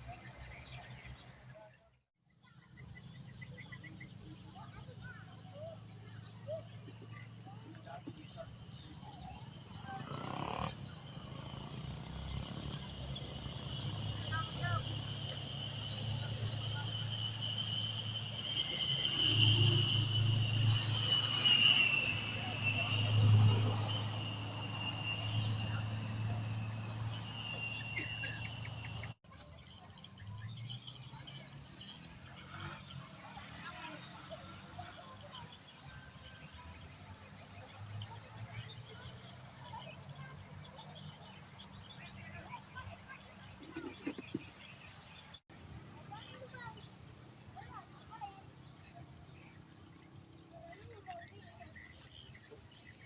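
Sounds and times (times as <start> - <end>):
bird-like chirps: 0.0 - 53.0
high insect calls: 0.0 - 53.0
thin high-pitched tone: 14.2 - 29.2.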